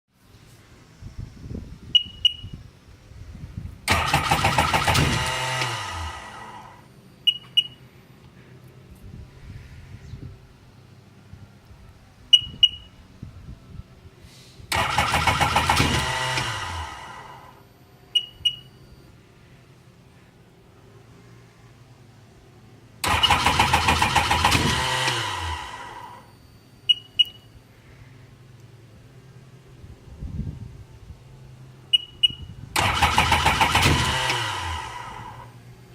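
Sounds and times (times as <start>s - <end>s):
short electronic beeps: 1.9s - 2.6s, 5.3s - 8.0s, 12.3s - 13.0s, 17.6s - 19.2s, 26.2s - 27.9s, 31.9s - 32.6s
starter cranking engine: 3.9s - 6.6s, 14.7s - 17.2s, 23.0s - 26.0s, 32.8s - 35.5s.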